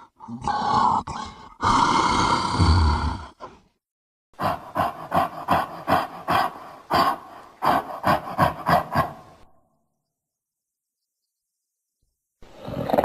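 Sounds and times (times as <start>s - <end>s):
man growling: 0.0s - 3.6s.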